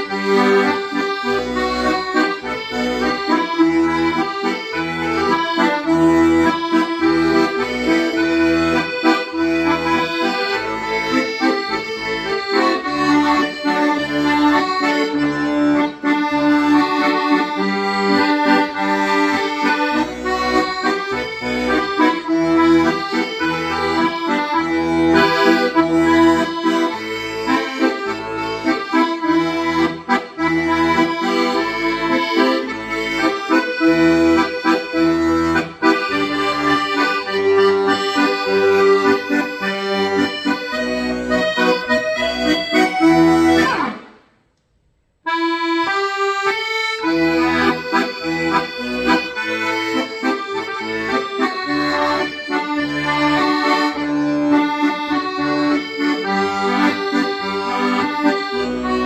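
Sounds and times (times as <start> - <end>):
pulsing bass accompaniment: 0.0 - 44.0
accordion melody: 0.0 - 59.0.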